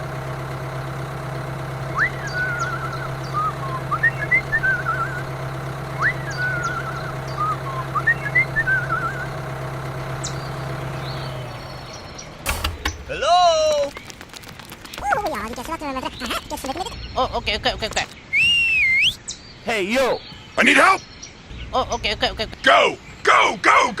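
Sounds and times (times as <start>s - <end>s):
engine hum: 0.0s - 23.5s
whistling with warbling trills: 1.9s - 5.3s, 6.0s - 9.3s, 18.3s - 19.3s.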